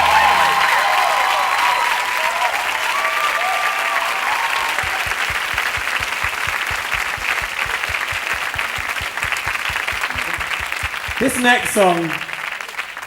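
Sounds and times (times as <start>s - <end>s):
audience clapping: 0.0s - 13.0s
low thumping beat: 4.8s - 11.6s.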